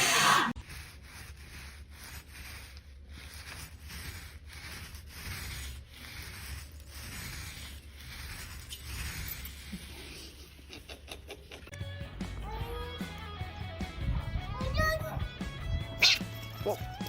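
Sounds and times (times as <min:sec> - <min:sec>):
scratchy rubbing: 0:00.0 - 0:11.8.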